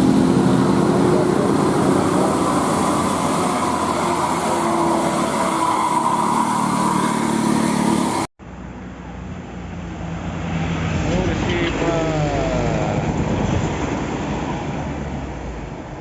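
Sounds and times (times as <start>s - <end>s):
buses passing: 0.0s - 16.0s
quieter traffic noise: 0.0s - 16.0s.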